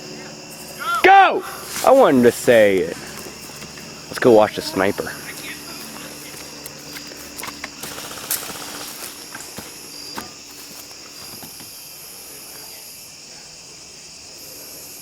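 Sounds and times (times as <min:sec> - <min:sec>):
crickets chirring: 0:00.0 - 0:15.0.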